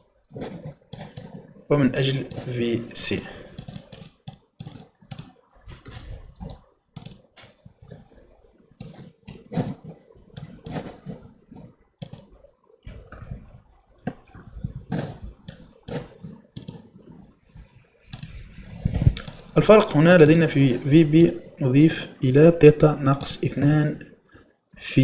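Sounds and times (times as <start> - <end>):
computer keyboard typing: 1.0 - 1.3, 2.2 - 2.8, 3.5 - 5.4, 6.5 - 7.3, 10.4 - 11.0, 12.0 - 12.3, 15.5 - 16.8, 18.1 - 18.4, 19.2 - 21.6.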